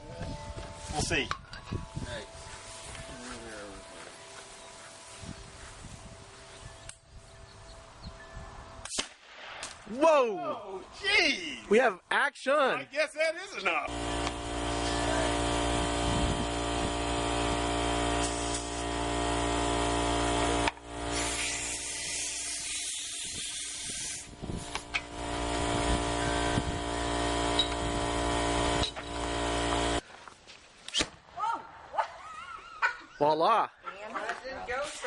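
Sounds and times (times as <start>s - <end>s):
small motor humming: 0.0s - 8.1s, 13.9s - 30.0s
spray-like hiss: 21.1s - 24.8s.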